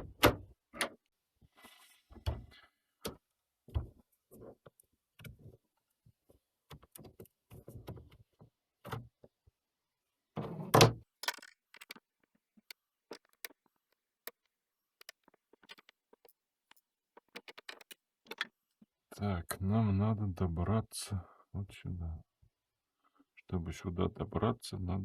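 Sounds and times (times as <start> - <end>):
clicks and taps on plastic laptop case: 17.3 - 18.5.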